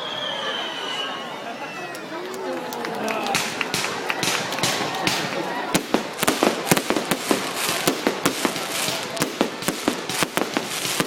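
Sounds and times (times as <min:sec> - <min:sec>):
fireworks bangs and crackles: 0:03.2 - 0:11.0.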